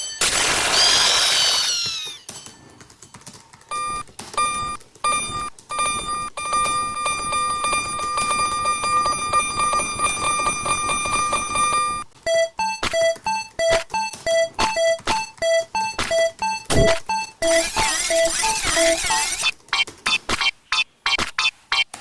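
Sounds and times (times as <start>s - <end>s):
railroad crossing alarm beeping: 3.7s - 19.2s.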